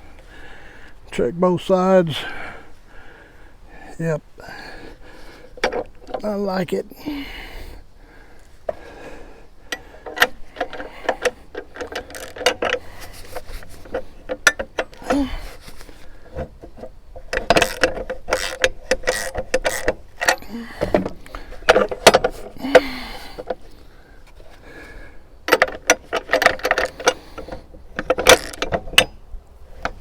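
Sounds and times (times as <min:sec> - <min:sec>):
metallic clicks and clanks of tools: 0:05.5 - 0:06.5, 0:09.7 - 0:23.6, 0:25.5 - 0:29.2.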